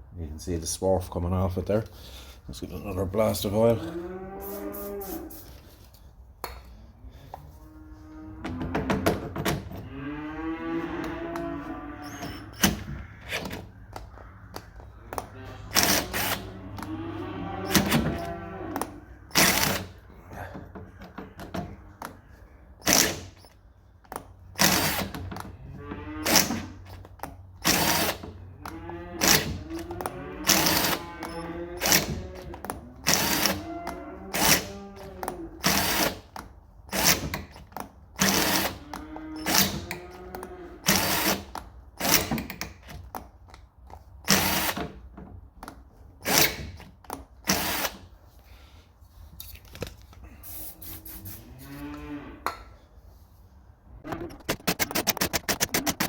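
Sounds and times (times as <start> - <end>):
drill motor whirring: 15.7 - 16.5, 27.6 - 28.2, 30.5 - 32.2, 44.3 - 44.8, 47.5 - 48.0
sharp clicks and knocks: 54.1 - 56.0.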